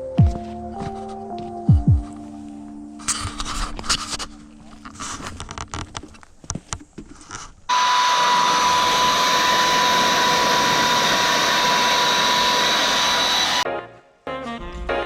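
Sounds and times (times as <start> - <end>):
power tool whining and hissing: 7.7 - 13.6.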